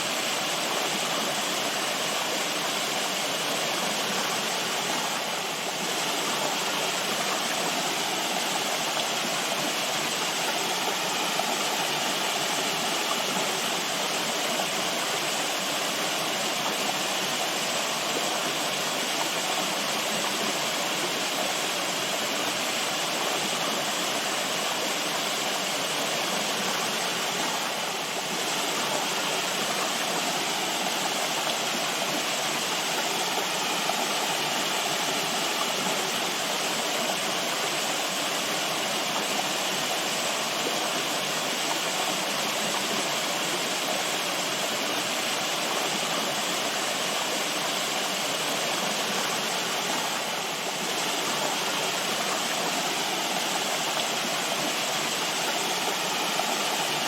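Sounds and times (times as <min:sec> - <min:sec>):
stream water rushing: 0:00.0 - 0:57.0.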